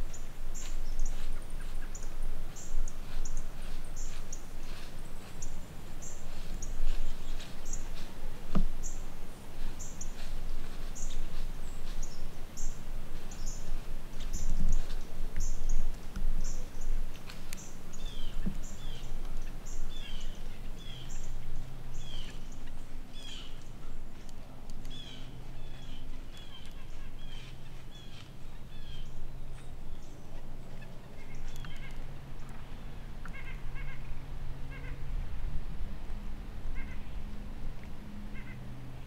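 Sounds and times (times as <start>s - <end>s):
lower bird chirps: 0.0s - 15.8s, 16.4s - 24.0s
songbirds singing: 0.0s - 35.0s, 36.6s - 38.7s.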